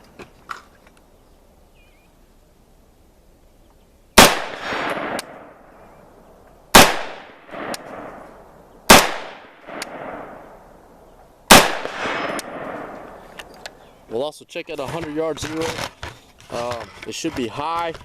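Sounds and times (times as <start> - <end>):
rifle shots: 4.2 - 5.7, 6.7 - 10.7, 11.5 - 13.6
faint sharp crack: 9.3 - 10.3.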